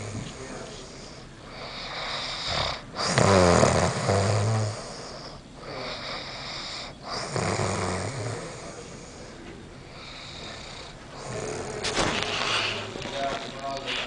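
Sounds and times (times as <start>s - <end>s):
person snoring loudly: 1.6s - 8.9s, 10.0s - 12.0s.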